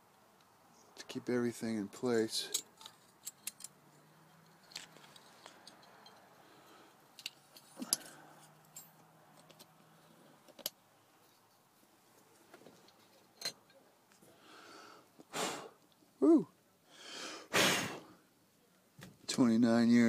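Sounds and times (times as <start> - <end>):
tool and metal parts clicking: 2.4 - 6.3, 7.1 - 9.8.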